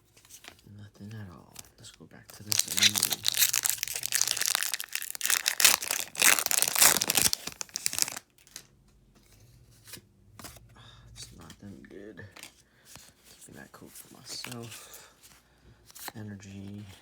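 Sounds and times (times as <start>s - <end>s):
foil wrapper tearing and crinkling: 2.4s - 8.6s.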